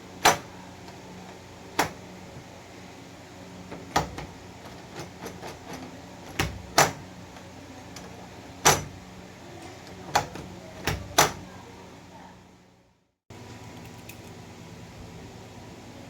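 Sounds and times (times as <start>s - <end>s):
door knob hardware clicking: 3.7s - 7.0s.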